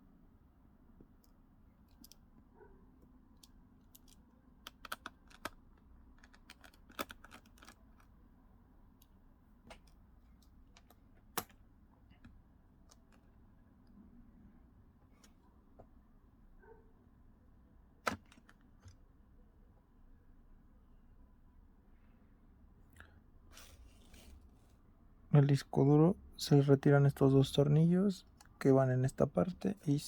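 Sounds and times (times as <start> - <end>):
faint clicks of plastic and metal parts: 1.0 - 2.4, 3.0 - 8.2, 9.0 - 14.0.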